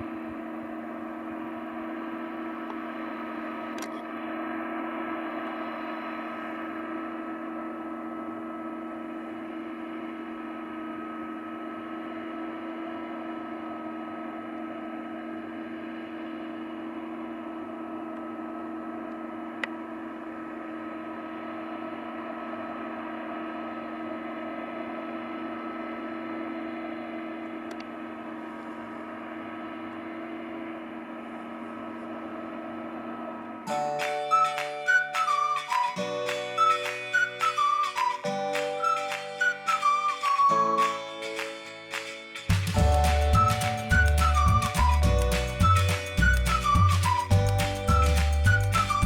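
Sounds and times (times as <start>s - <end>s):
combine harvester running: 0.0s - 49.0s.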